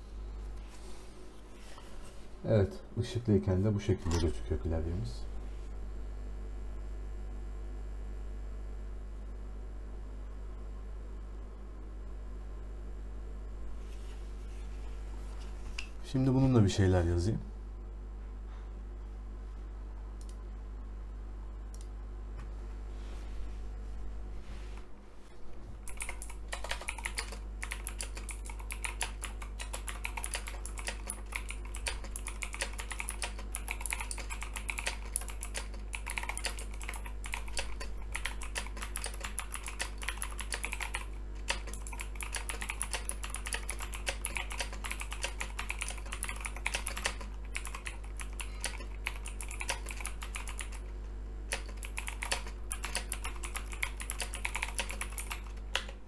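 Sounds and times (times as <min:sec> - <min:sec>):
mechanical keyboard typing: 0:25.8 - 0:50.9, 0:51.5 - 0:56.0.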